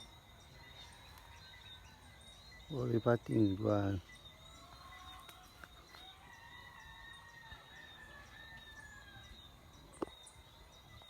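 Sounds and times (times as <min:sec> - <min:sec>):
faint rooster crowing: 0:04.6 - 0:09.6.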